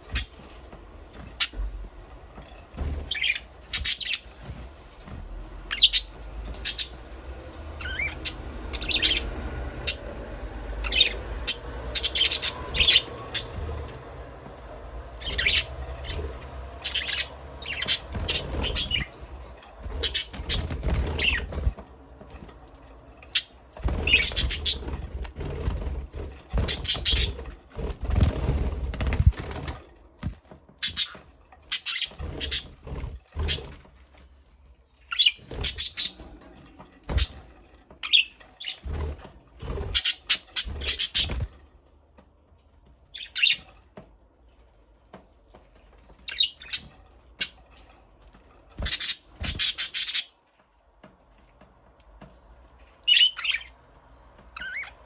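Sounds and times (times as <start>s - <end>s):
budgerigars chirping: 5.7s - 7.0s, 7.8s - 10.1s, 10.8s - 13.6s, 15.2s - 19.2s, 19.9s - 21.8s, 23.3s - 25.0s, 26.6s - 27.4s, 39.9s - 41.5s, 48.8s - 50.3s, 53.0s - 53.8s.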